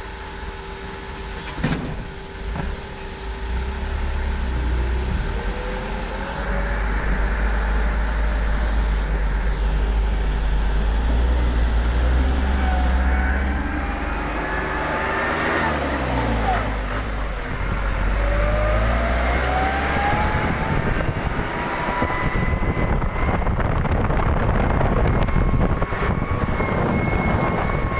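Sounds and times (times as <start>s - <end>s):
vehicle engine rumbling: 0.0s - 27.9s.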